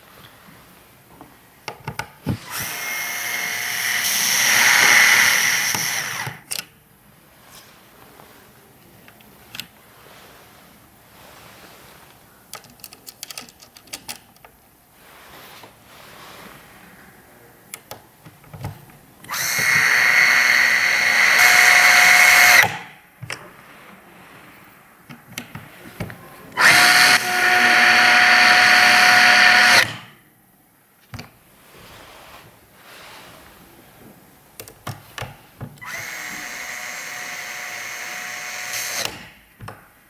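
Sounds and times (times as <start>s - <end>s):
electric screwdriver motor whine: 2.4s - 6.4s, 19.3s - 22.8s, 26.6s - 30.0s, 35.8s - 39.2s.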